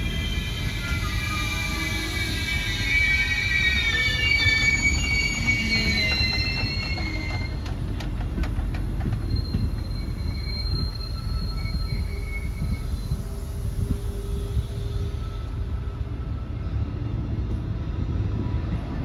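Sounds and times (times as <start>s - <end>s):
train wheels squealing: 0.0s - 16.8s
train rumble: 0.0s - 19.0s
wheels clicking over rail joints: 4.7s - 14.6s.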